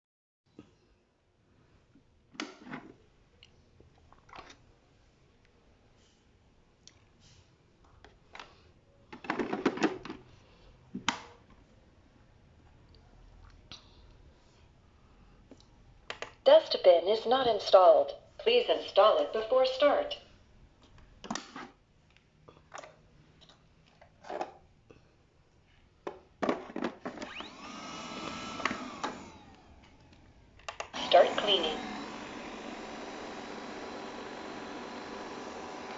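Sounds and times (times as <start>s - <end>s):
robot vacuum motor whine: 27.2s - 29.9s, 31.0s - 35.9s.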